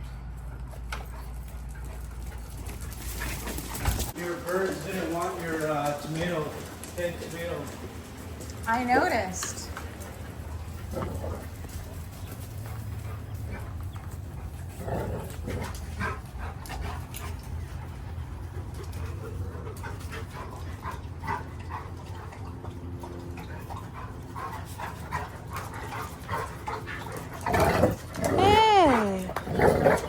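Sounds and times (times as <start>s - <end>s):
steady low hum: 6.3s - 29.2s
dogs whimpering and yipping: 9.9s - 29.4s.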